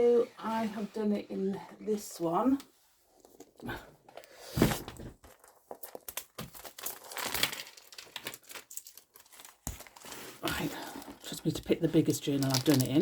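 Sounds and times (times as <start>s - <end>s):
paper rustling and crinkling: 4.5s - 13.0s.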